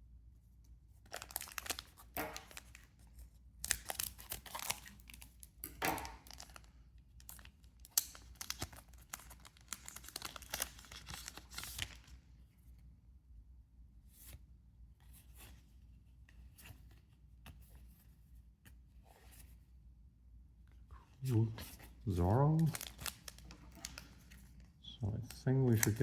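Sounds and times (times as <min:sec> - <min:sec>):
card pack wrapper tearing: 0:01.1 - 0:02.9, 0:03.6 - 0:12.1, 0:22.3 - 0:24.6, 0:25.6 - 0:26.0.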